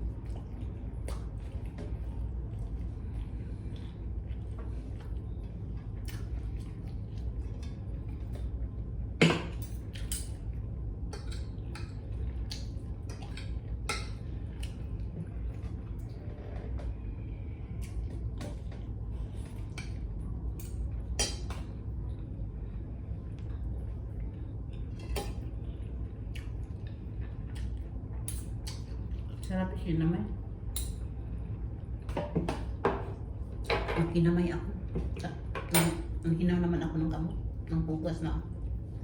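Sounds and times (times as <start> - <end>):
steady low hum: 0.0 - 39.0
dishes and utensils clinking: 35.6 - 36.1.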